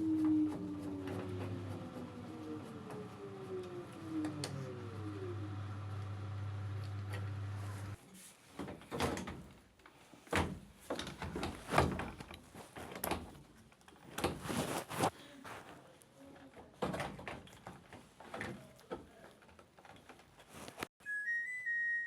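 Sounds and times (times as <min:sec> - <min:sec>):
knocks and clunks of dryer parts: 0:10.3 - 0:13.4.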